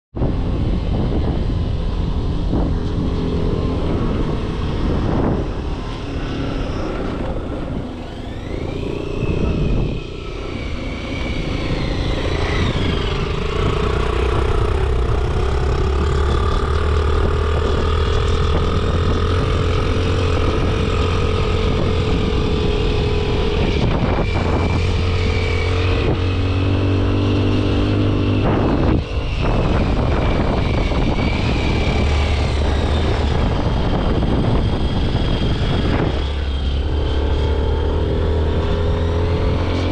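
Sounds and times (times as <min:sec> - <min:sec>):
heavy low rumble: 0:00.1 - 0:39.9
motorcycle engine revving: 0:00.2 - 0:39.9.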